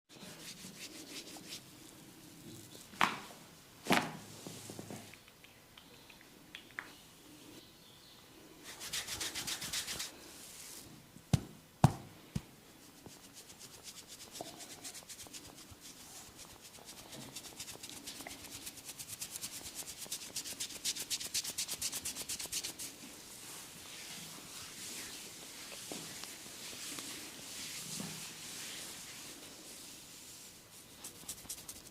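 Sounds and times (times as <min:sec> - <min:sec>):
fingers scratching through hair: 0:00.2 - 0:03.0, 0:08.6 - 0:10.1, 0:12.8 - 0:22.9, 0:30.8 - 0:31.9.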